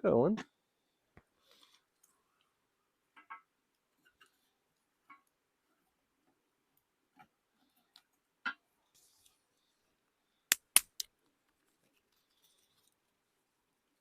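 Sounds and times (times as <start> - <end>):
sharp clicks and snaps: 10.5 - 11.1.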